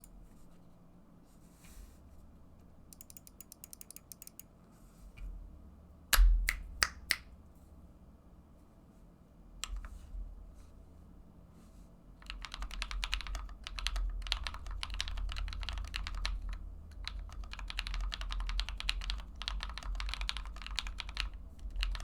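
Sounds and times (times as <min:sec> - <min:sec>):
mechanical keyboard keystrokes: 0:12.2 - 0:22.0.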